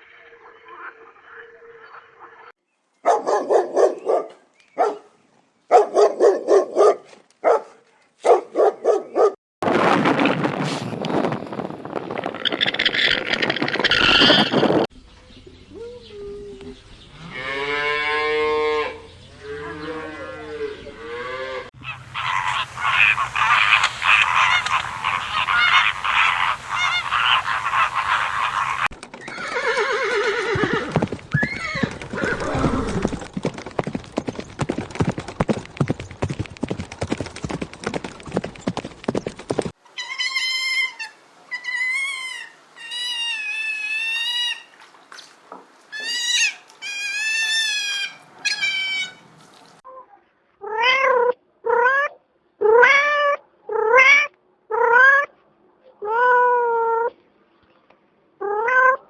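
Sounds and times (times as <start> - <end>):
wavy pitched animal calls: 11.9 - 14.9, 21.8 - 29.0
goose honking: 21.8 - 28.9.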